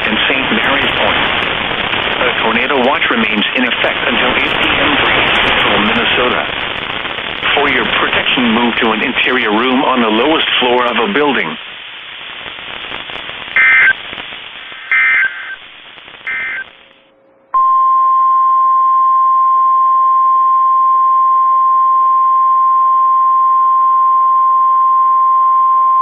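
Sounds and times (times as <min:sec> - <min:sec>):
receiver hiss: 0:00.0 - 0:26.0
digital data bursts: 0:12.5 - 0:16.8
loud steady alarm tone: 0:13.6 - 0:14.0, 0:14.8 - 0:18.1.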